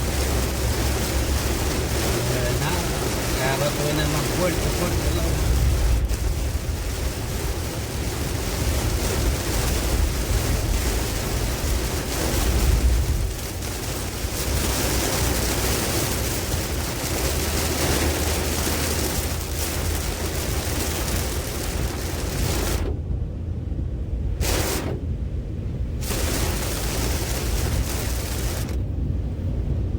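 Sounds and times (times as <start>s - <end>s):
storm wind gusting: 0.0s - 29.9s
wind buffeting microphone: 4.6s - 17.5s.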